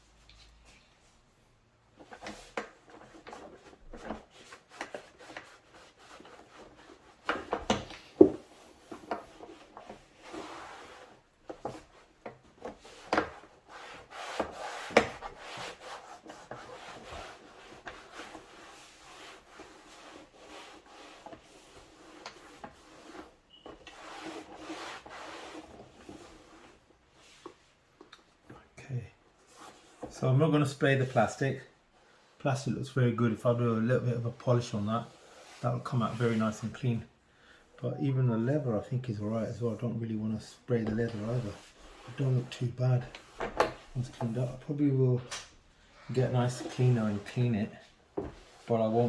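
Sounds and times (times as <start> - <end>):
rubbing and scraping on a panel: 1.9 - 27.8, 29.3 - 30.2, 33.2 - 37.1, 40.5 - 45.1, 46.0 - 49.0.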